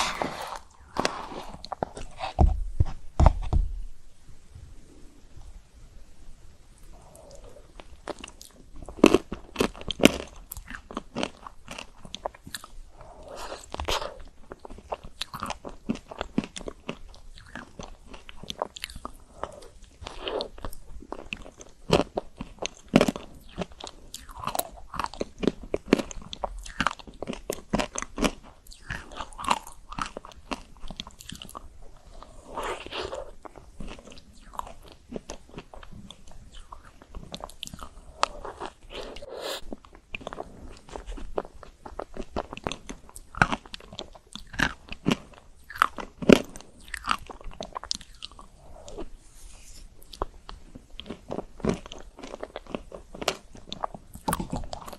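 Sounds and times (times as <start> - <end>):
wet chewing: 7.0 - 49.1.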